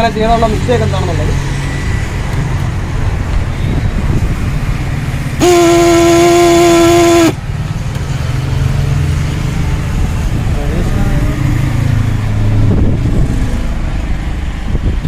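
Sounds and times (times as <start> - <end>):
air horn steady note: 5.4 - 7.4.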